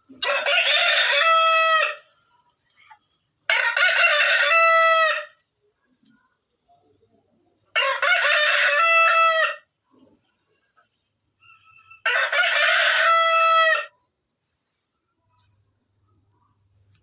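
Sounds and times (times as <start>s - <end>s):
rooster crowing: 0.2s - 2.1s, 3.5s - 5.4s, 7.7s - 9.7s, 11.4s - 14.0s.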